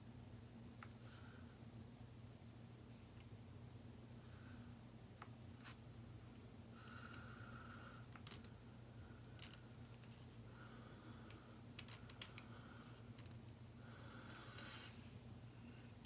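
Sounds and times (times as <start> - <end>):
small plastic and metal parts clicking: 8.1 - 8.5, 11.3 - 12.5.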